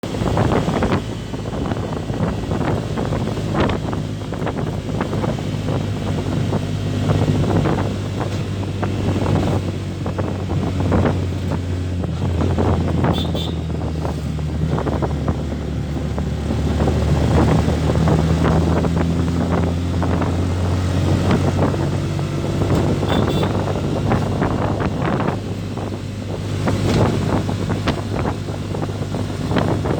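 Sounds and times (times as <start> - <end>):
vehicle engine running: 0.0 - 29.9
wind buffeting microphone: 0.0 - 29.9.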